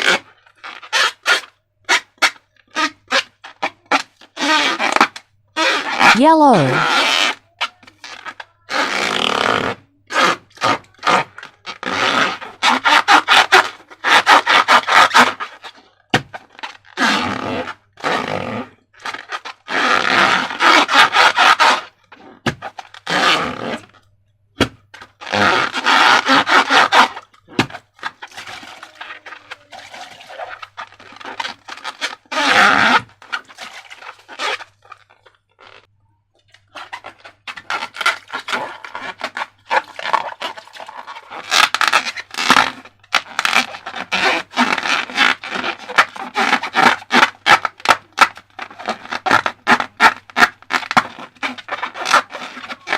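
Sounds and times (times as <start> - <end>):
slime squelching: 33.2 - 47.7.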